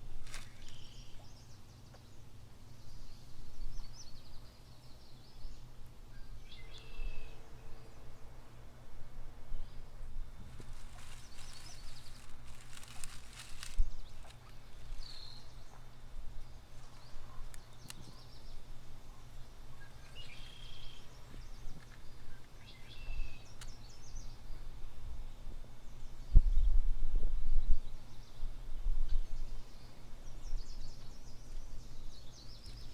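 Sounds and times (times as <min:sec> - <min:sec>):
rustling: 0:00.0 - 0:01.0, 0:10.2 - 0:15.8
bird chirps: 0:10.6 - 0:24.5.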